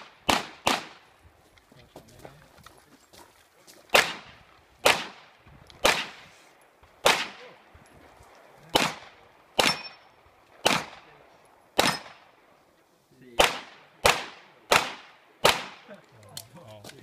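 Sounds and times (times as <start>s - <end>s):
pistol shots: 0.0s - 1.0s, 3.9s - 6.2s, 7.0s - 7.6s, 8.7s - 11.2s, 11.8s - 12.3s, 13.4s - 15.9s.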